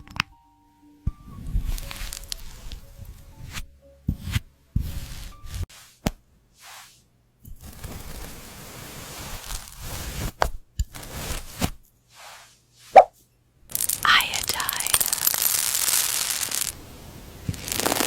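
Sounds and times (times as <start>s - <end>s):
crumbly food crackling and scraping: 7.5s - 12.6s, 17.4s - 18.0s.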